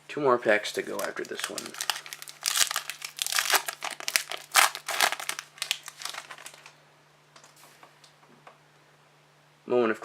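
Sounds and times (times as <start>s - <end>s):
wrapper crinkling: 0.7s - 6.8s.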